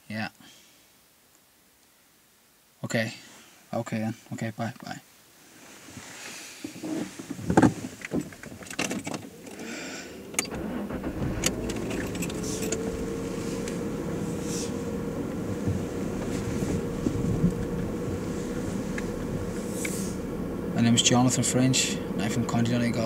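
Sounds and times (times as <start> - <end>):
car engine starting and running: 7.2 - 23.0.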